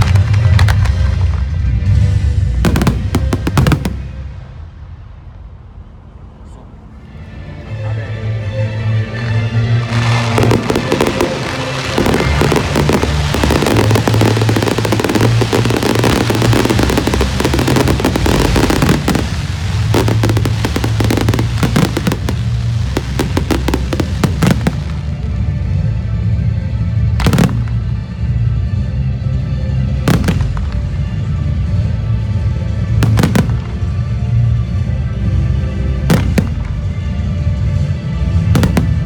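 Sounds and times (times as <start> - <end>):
music playing: 0.0 - 5.1, 6.4 - 39.0
fireworks crackling: 0.0 - 5.4, 9.1 - 25.7, 27.2 - 28.0, 30.1 - 34.9, 35.9 - 39.0
loud firework bang: 30.1 - 31.1, 33.0 - 34.0, 36.1 - 36.8, 38.5 - 39.0.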